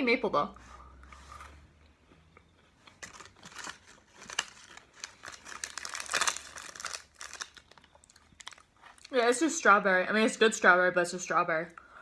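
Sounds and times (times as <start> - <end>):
candy wrapper crinkling: 2.9 - 9.3.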